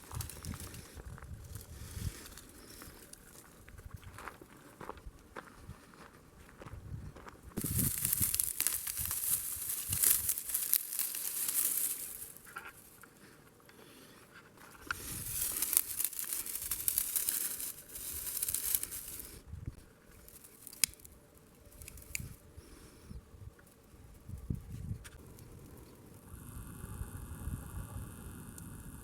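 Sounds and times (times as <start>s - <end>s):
crinkling and tearing: 0.0s - 0.9s, 7.6s - 13.0s, 14.6s - 19.4s, 20.1s - 22.4s.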